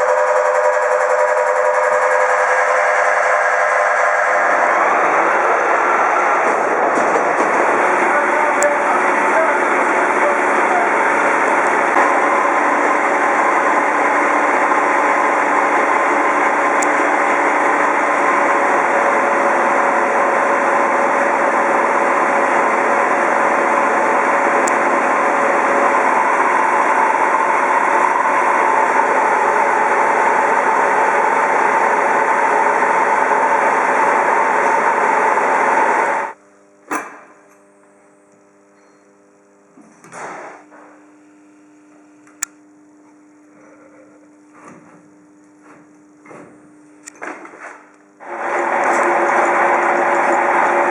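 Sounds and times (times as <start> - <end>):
boring mill cutting metal: 0.0 - 36.4, 48.2 - 50.9.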